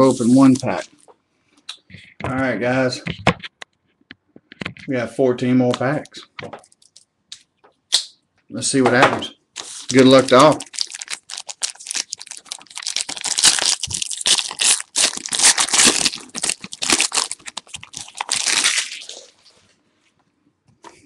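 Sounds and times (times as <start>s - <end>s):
wrapper tearing and crinkling: 9.6s - 19.5s.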